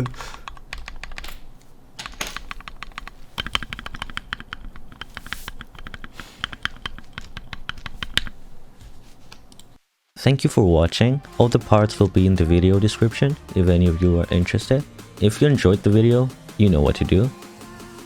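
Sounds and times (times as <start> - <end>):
mechanical keyboard typing: 0.0 - 8.4.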